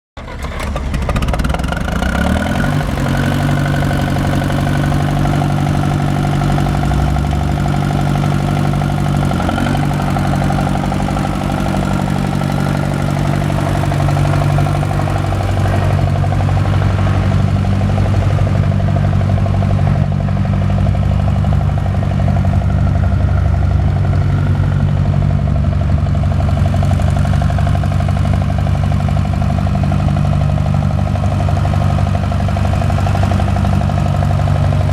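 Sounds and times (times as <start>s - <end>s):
tractor engine idling: 0.2s - 34.9s.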